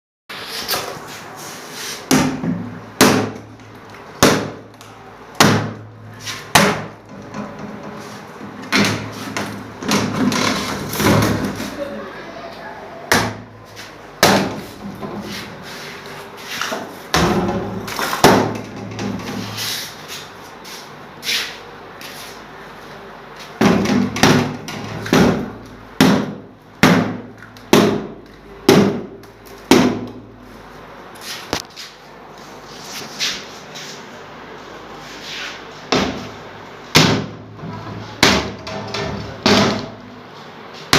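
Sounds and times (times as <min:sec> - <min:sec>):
sharp knocks and thuds: 0:06.5 - 0:11.6, 0:17.1 - 0:19.4, 0:23.6 - 0:30.2, 0:36.9 - 0:40.0.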